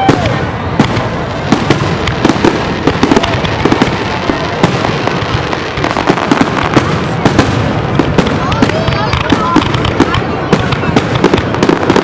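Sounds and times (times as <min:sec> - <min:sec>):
fireworks bangs and crackles: 0:00.0 - 0:12.0.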